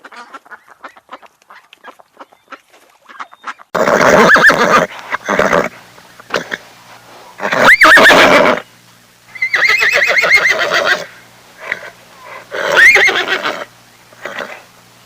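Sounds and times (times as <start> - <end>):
horse whinnying: 3.8 - 5.7, 7.4 - 8.6, 9.4 - 11.9, 12.5 - 14.6.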